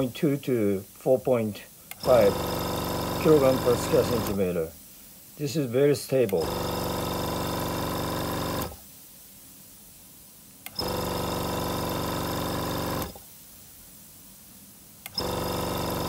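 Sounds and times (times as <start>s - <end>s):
compressor motor humming: 1.9s - 4.5s, 6.3s - 8.8s, 10.6s - 13.2s, 15.0s - 16.0s.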